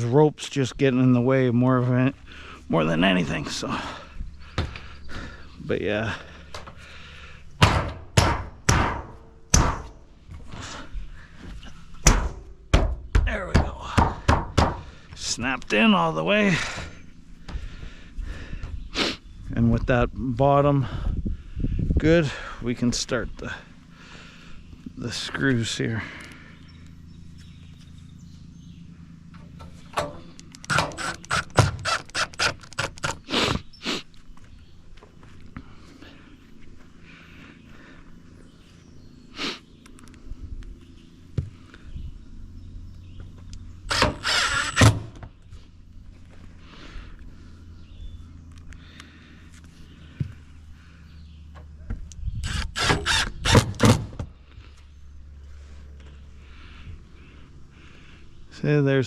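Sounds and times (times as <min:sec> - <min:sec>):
steady low hum: 0:00.0 - 0:59.0
knocks on steel roof panels: 0:07.6 - 0:09.9, 0:12.0 - 0:14.9.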